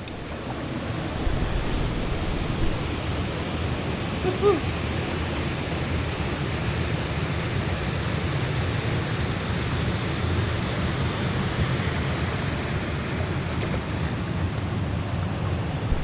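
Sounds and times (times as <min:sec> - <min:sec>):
wind buffeting microphone: 0:00.0 - 0:05.2, 0:15.0 - 0:16.0.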